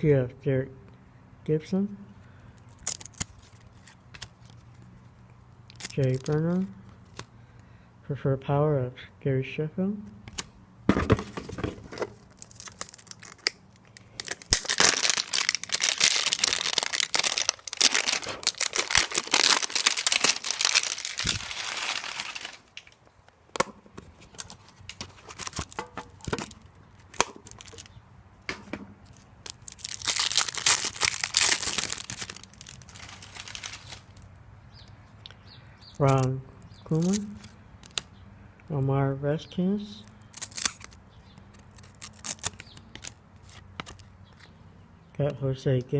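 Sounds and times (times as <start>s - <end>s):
wrapper crinkling: 2.7s - 4.8s, 11.6s - 23.0s, 24.1s - 28.0s, 29.0s - 34.4s, 40.2s - 44.1s.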